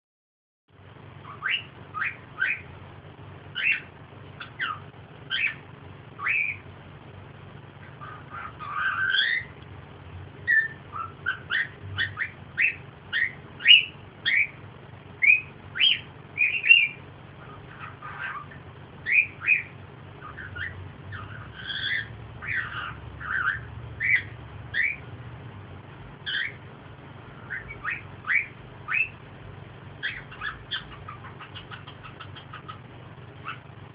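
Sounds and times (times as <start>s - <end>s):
small animal chirping and squeaking: 1.2s - 2.8s, 3.5s - 6.7s, 7.8s - 9.6s, 10.4s - 14.6s, 15.2s - 25.1s, 26.2s - 26.7s, 27.4s - 29.2s, 30.0s - 33.9s.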